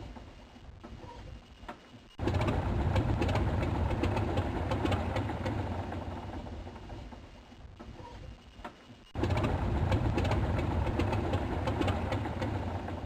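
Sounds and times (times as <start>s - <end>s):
helicopter rotor chop: 2.2s - 7.0s, 9.2s - 13.0s.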